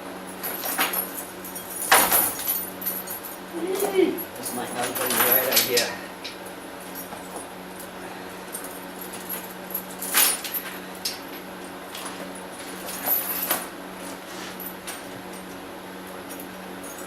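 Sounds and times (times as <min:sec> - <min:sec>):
metal tire chains clinking: 0:00.4 - 0:07.4, 0:08.5 - 0:11.2, 0:12.5 - 0:13.7.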